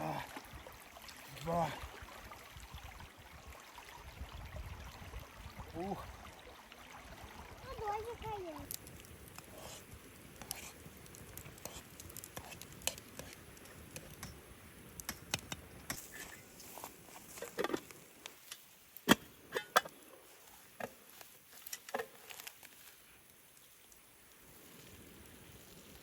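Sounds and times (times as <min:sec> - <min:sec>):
raindrops pattering: 0:00.0 - 0:19.2.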